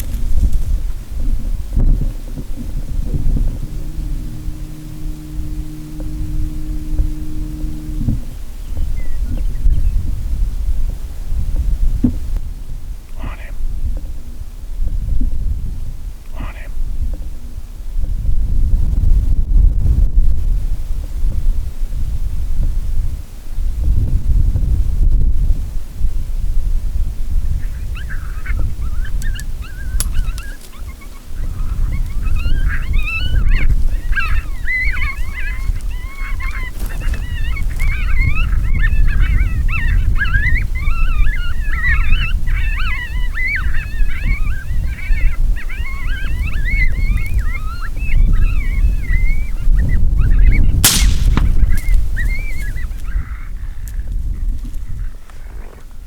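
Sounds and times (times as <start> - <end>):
wind rumbling on microphone: 0.0 - 56.0
flock of birds calling: 2.3 - 8.3, 27.7 - 53.4
loud sharp bang: 50.8 - 51.9.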